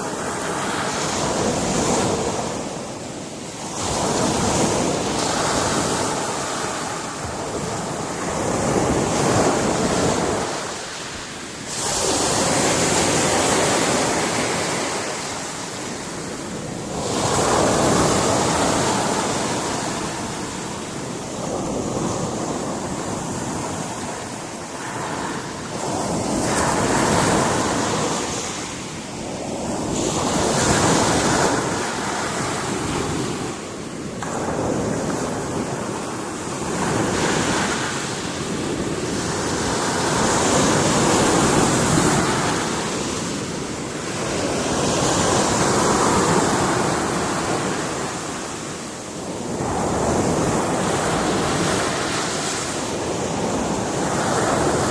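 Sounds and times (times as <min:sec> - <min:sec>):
waves breaking on rocks: 0:00.0 - 0:24.0.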